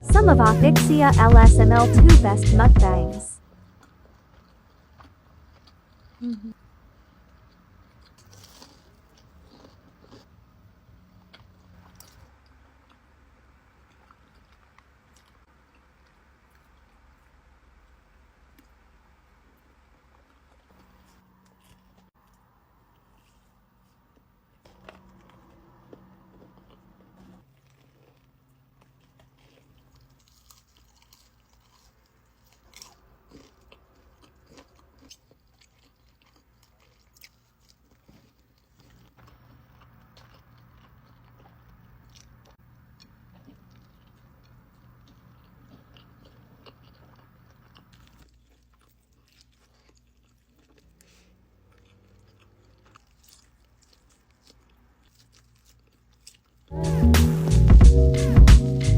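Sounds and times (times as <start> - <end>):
faint steady hum: 0.0 - 58.9
person chewing crunchy food: 3.4 - 57.1.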